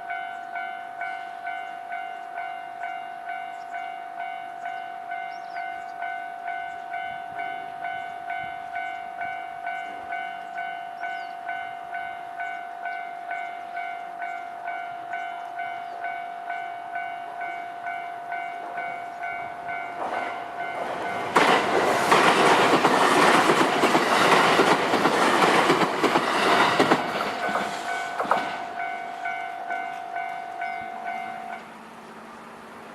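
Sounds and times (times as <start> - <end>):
train rumble and wheel clatter: 0.0 - 32.9
electronic crossing bell ringing: 27.4 - 31.6.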